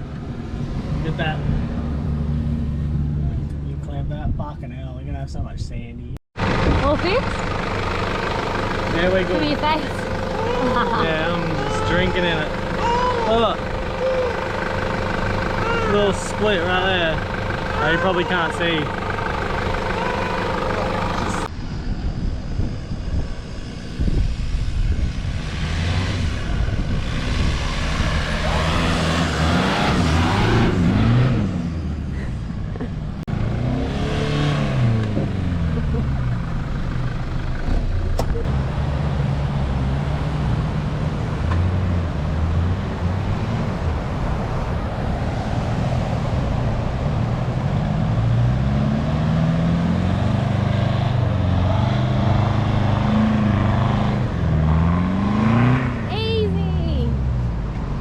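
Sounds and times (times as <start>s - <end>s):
car engine revving: 6.4s - 21.5s, 25.0s - 56.2s.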